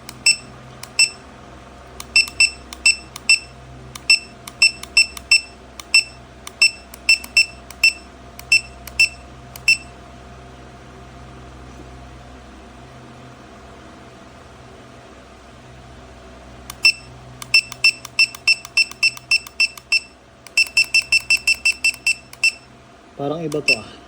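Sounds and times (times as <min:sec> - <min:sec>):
short high beeps: 0:00.2 - 0:01.2, 0:02.1 - 0:03.5, 0:04.1 - 0:09.9, 0:16.8 - 0:22.7, 0:23.6 - 0:23.9.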